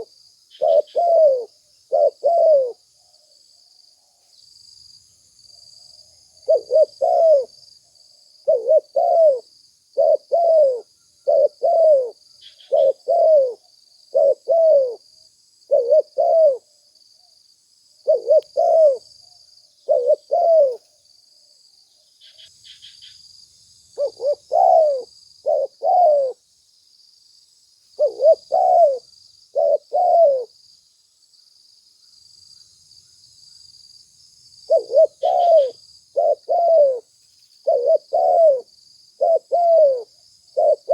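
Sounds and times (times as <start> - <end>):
dove cooing: 0.0 - 2.8, 6.4 - 7.6, 8.4 - 15.0, 15.7 - 16.7, 18.0 - 19.1, 19.8 - 20.8, 24.0 - 26.4, 28.0 - 30.6, 34.7 - 40.9.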